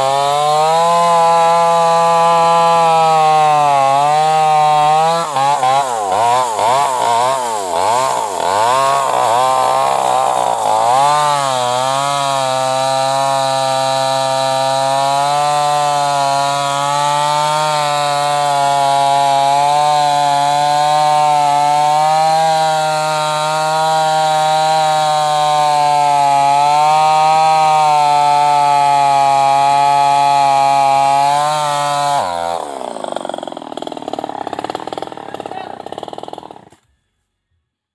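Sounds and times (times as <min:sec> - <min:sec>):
chainsaw revving: 0:00.0 - 0:36.9.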